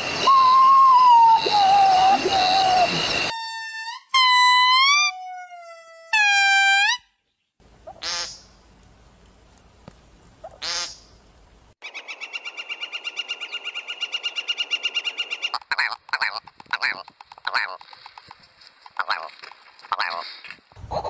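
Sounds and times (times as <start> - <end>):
whistle-like animal calls: 0.2 - 7.0.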